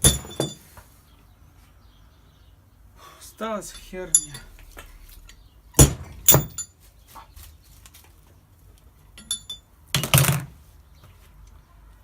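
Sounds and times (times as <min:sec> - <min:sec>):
metal tools knocking and clinking: 0:00.0 - 0:00.7, 0:03.7 - 0:04.6, 0:05.8 - 0:06.7, 0:09.2 - 0:10.4.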